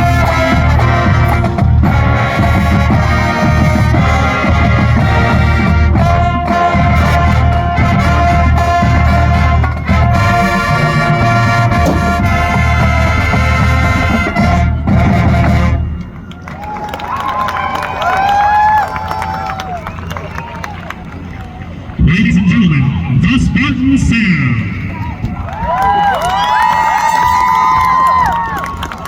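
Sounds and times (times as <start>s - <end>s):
bass drum beat: 0.0s - 15.7s
marching band playing: 0.0s - 29.0s.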